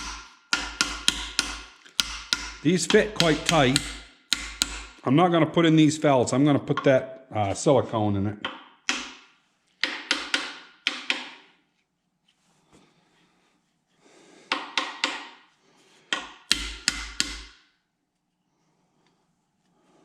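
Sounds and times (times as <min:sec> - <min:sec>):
hammer tapping on metal: 0:00.0 - 0:05.0, 0:08.4 - 0:09.2, 0:09.8 - 0:11.4, 0:14.5 - 0:15.4, 0:16.1 - 0:17.6.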